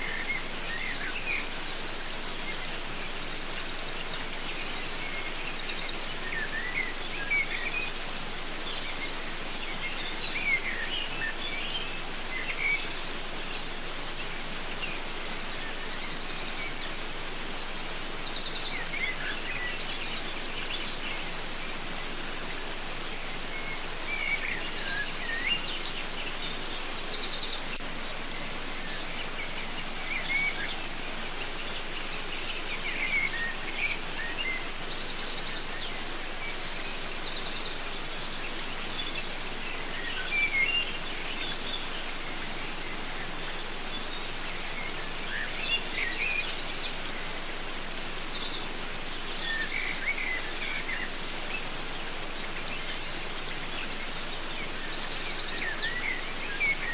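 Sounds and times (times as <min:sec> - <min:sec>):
birds chirping and trilling: 0:00.0 - 0:56.9
waterfall rushing: 0:00.0 - 0:56.9.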